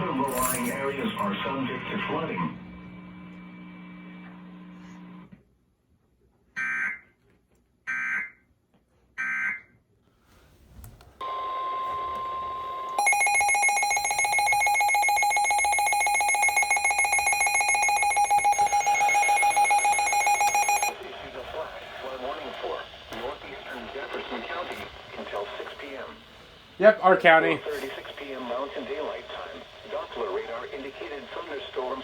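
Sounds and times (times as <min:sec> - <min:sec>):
steady beep: 0:11.2 - 0:21.0
rapidly pulsing alert tone: 0:13.0 - 0:21.0.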